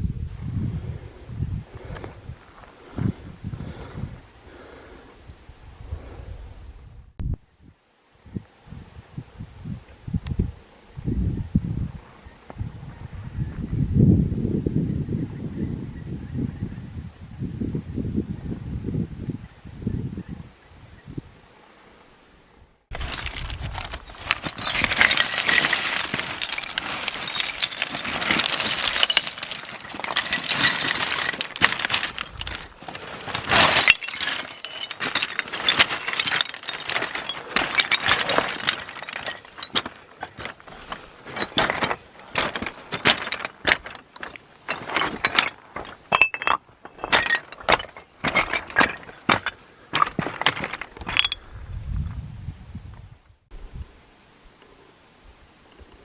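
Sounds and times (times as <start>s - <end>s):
hard objects clinking together: 22.9s - 51.4s.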